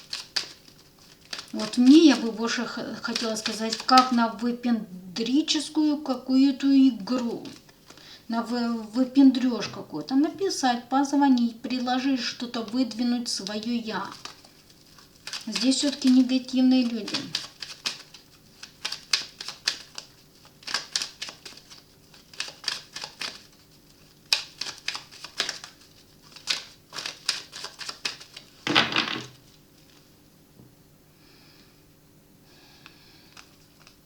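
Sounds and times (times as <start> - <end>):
cards clicking and tapping: 0.0 - 2.3, 3.0 - 4.2, 14.1 - 23.6, 24.2 - 29.4
card deck rustling: 0.0 - 4.2, 12.6 - 30.0.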